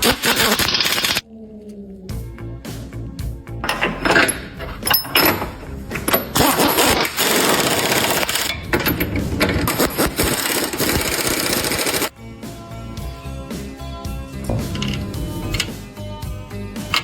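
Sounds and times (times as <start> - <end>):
background music: 1.9 - 17.0
power tool running: 6.5 - 12.1.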